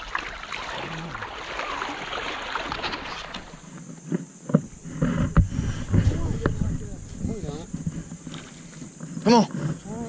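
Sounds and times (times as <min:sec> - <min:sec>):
flowing river water: 0:00.0 - 0:10.0
wind buffeting the microphone: 0:04.7 - 0:09.0.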